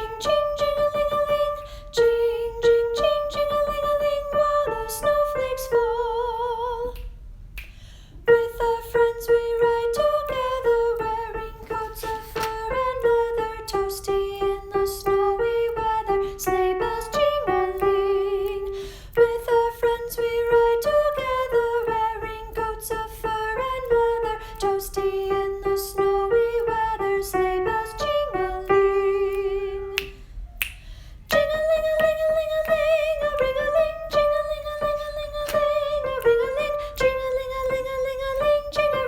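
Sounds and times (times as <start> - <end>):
soprano voice singing: 0.0 - 7.1, 8.3 - 30.1, 31.3 - 39.0
singer breathing: 7.7 - 8.2, 18.8 - 19.2, 30.3 - 31.3.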